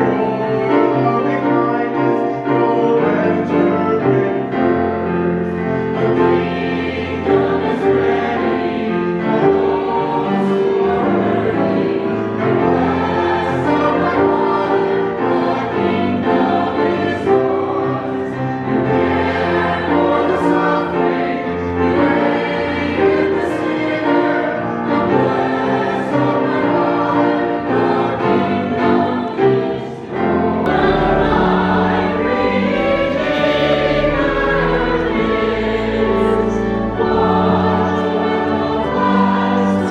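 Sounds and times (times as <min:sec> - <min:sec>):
choir singing a slow hymn: 0:00.0 - 0:39.9.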